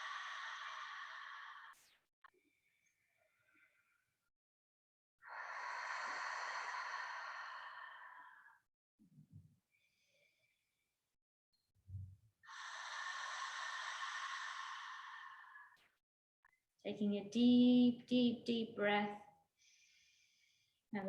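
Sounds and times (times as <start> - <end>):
person breathing deeply: 0.0 - 1.8, 5.2 - 8.7, 12.5 - 15.8.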